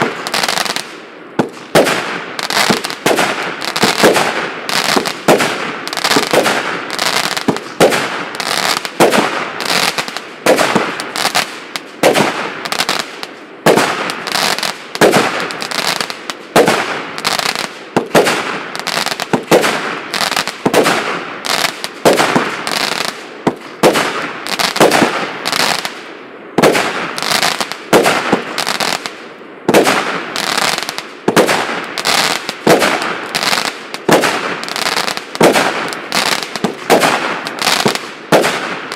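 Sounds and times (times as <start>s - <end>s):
firework cake shots firing: 0.0s - 25.9s, 26.6s - 29.1s, 29.7s - 38.9s
sharp firework reports: 1.4s - 29.1s, 29.7s - 38.9s.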